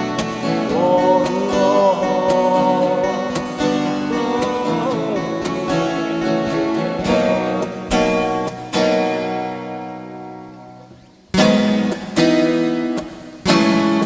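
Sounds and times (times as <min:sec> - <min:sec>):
held melody line: 0:00.0 - 0:10.1
strummed acoustic guitar: 0:00.0 - 0:14.0.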